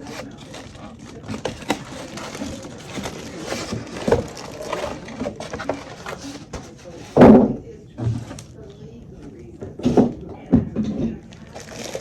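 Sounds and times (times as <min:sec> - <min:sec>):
packaging rustling: 0:00.0 - 0:07.2, 0:11.3 - 0:12.0.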